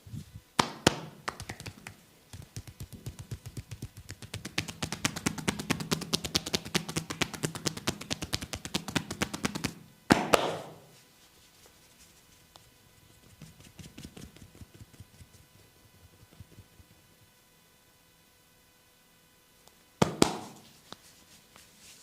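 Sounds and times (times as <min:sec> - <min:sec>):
hands tapping on body: 0:00.6 - 0:10.7, 0:20.0 - 0:21.0.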